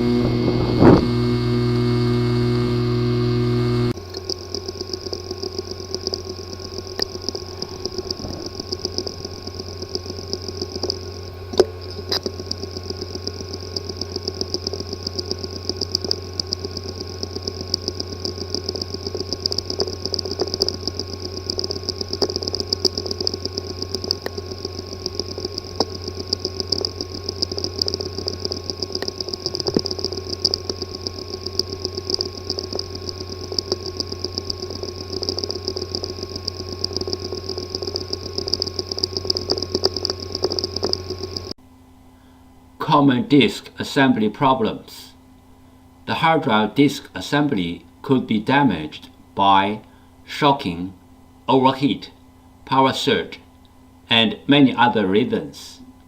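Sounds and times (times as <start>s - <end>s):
hard drive click: 0.0s - 41.6s
hard drive ticking: 0.0s - 41.6s
hard drive humming: 0.0s - 56.0s.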